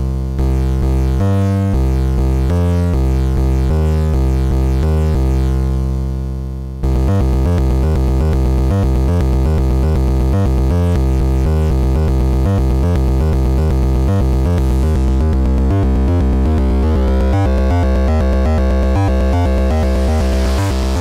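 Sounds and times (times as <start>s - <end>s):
synthesizer sequence with deep bass: 6.8s - 21.0s
held synthesizer note: 14.4s - 21.0s.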